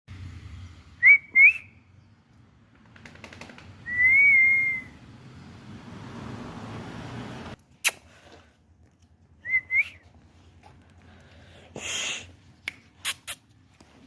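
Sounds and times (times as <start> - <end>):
person whistling: 1.0 - 1.7, 3.9 - 5.0, 9.4 - 10.0.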